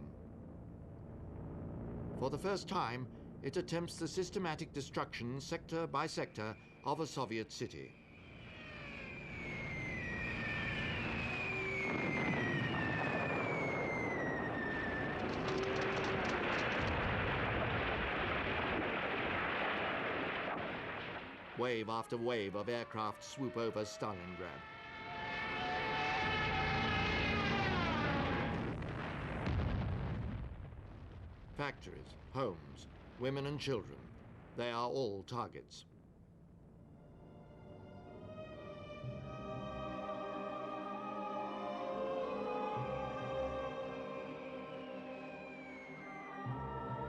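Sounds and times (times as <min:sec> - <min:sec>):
aircraft engine drone: 0:00.0 - 0:30.4, 0:36.4 - 0:47.0
rumble of blasts: 0:00.0 - 0:40.0
falling bomb whistles: 0:06.3 - 0:30.4, 0:38.5 - 0:47.0.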